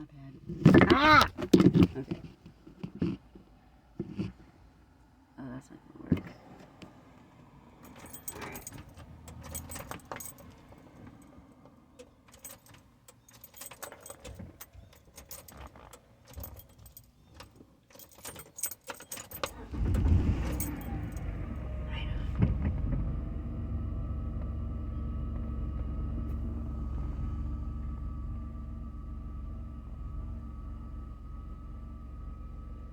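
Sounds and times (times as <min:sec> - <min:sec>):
car keys jangling: 0:07.8 - 0:21.8
car engine running: 0:07.8 - 0:32.9.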